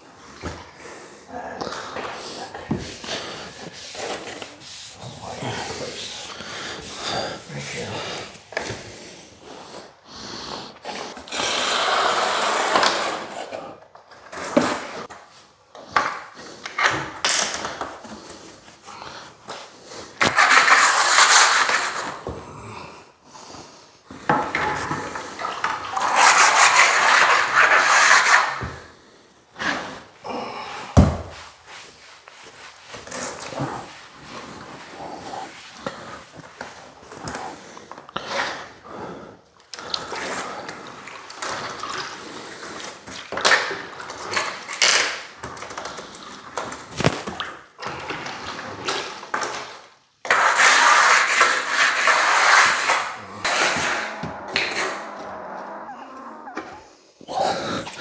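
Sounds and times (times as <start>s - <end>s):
scraping strokes on tile: 19.5s - 22.4s, 24.6s - 28.9s, 50.3s - 56.7s.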